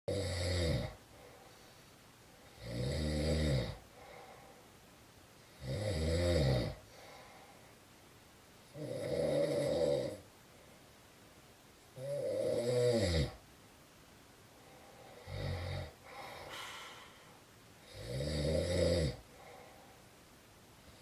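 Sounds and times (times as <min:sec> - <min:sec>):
loud snoring: 0:00.1 - 0:01.0, 0:02.5 - 0:03.8, 0:05.6 - 0:06.8, 0:08.7 - 0:10.2, 0:12.0 - 0:13.4, 0:15.1 - 0:16.7, 0:17.8 - 0:19.2.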